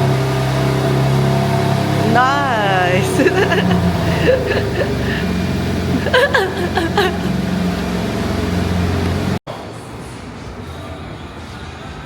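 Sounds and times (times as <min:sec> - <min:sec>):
car engine idling: 0:00.0 - 0:09.4.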